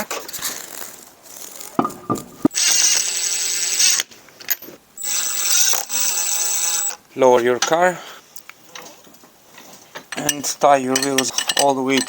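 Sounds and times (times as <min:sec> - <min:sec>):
battery power tool spinning: 0:02.5 - 0:04.1, 0:05.0 - 0:07.0.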